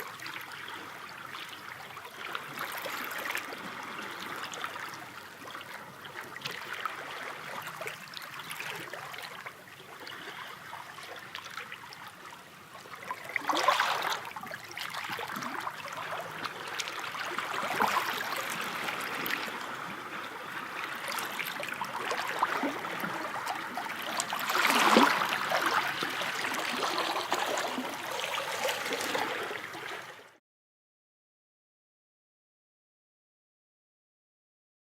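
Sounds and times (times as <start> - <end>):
sea waves washing: 16.2 - 30.1.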